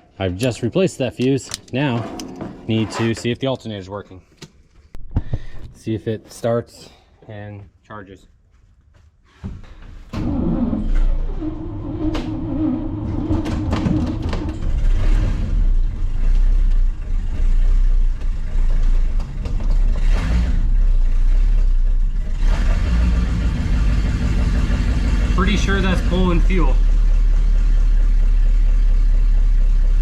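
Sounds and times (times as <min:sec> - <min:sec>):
bus engine starting and running: 0:10.1 - 0:30.0.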